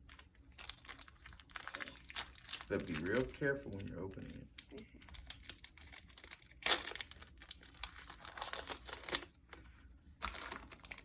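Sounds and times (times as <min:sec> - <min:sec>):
foil wrapper crinkling: 0:00.0 - 0:11.0
foil tearing rips: 0:05.3 - 0:09.3.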